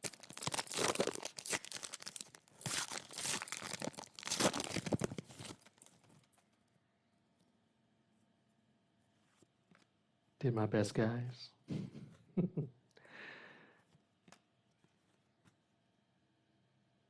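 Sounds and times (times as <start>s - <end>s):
wrappers crinkling: 0.0s - 6.3s.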